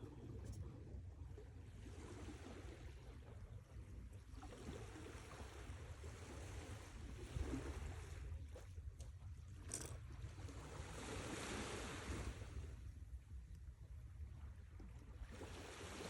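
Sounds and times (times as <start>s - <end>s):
sea waves washing on shore: 10.6s - 12.8s.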